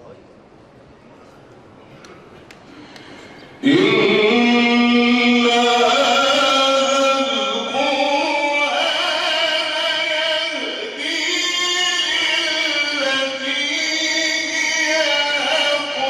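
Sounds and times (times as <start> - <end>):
man reciting melodically: 3.6 - 16.0.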